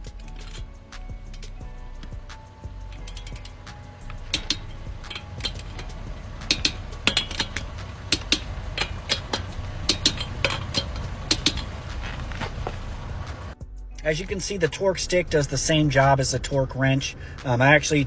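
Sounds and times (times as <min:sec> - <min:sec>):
torque wrench metallic clicks: 0:00.1 - 0:02.1, 0:02.9 - 0:13.6.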